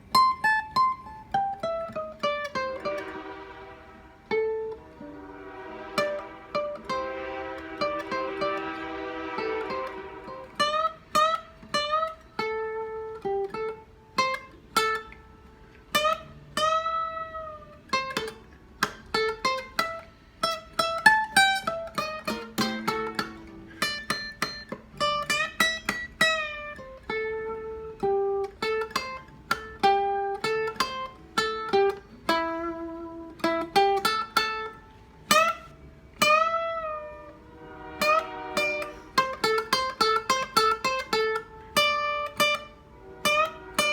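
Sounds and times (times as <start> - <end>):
solo blues guitar: 0.0 - 43.9.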